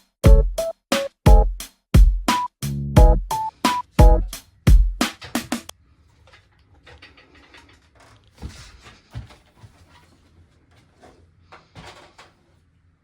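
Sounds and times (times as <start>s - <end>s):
music: 0.0s - 5.7s
clicks and knocks of handling: 6.2s - 12.5s.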